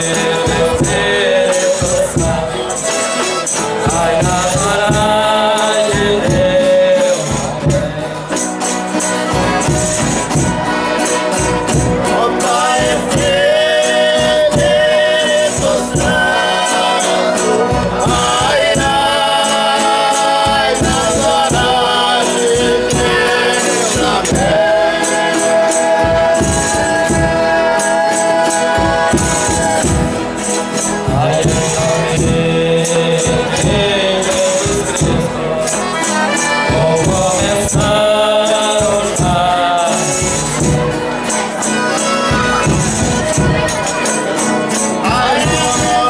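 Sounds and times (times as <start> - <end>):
tambourine jingling: 0.0 - 46.0
voices singing held notes: 0.0 - 46.0.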